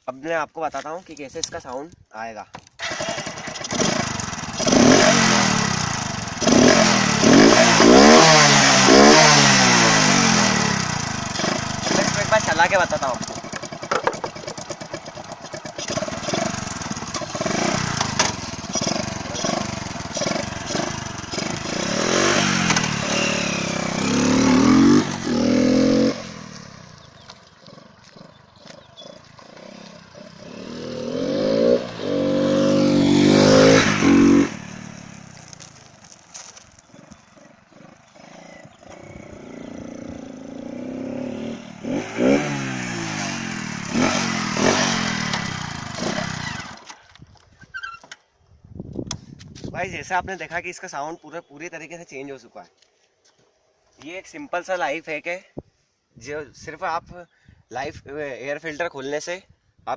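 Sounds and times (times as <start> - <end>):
motorcycle engine idling: 2.8 - 7.4, 9.2 - 31.0
motorcycle engine revving: 2.8 - 36.2, 36.8 - 47.0.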